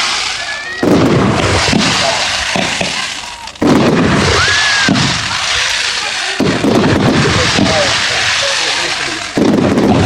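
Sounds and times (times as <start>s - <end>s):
firework whistle rising: 0.0s - 6.3s
firework crackle: 0.0s - 10.0s
loud firework bang: 0.0s - 10.0s.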